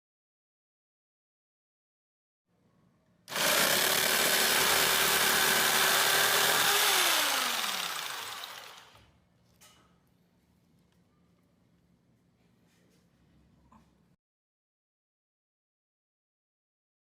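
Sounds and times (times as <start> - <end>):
electric jigsaw running: 3.3 - 9.1.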